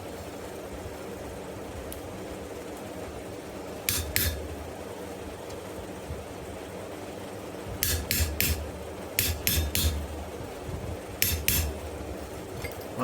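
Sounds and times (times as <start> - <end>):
hammer striking steel punch: 3.9 - 4.6, 7.8 - 10.2, 11.2 - 11.8.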